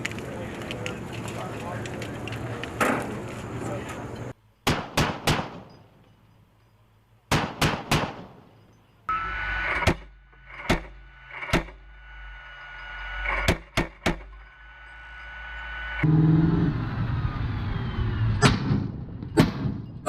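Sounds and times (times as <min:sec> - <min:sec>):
chain gun firing: 0:07.3 - 0:08.4
steady vehicle hum: 0:09.1 - 0:20.0.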